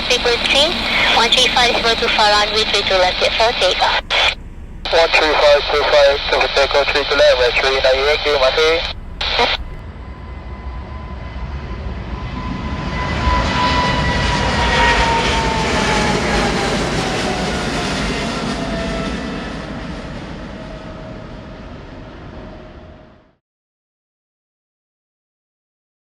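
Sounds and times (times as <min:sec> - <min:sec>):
high jet whine: 0:00.0 - 0:22.6
jet engine roar: 0:00.0 - 0:23.2.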